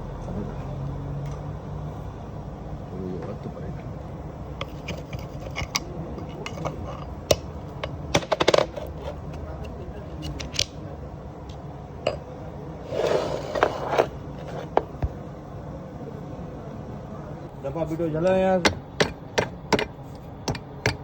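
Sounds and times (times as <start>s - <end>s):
metal scraping: 4.6s - 7.2s, 12.8s - 14.9s.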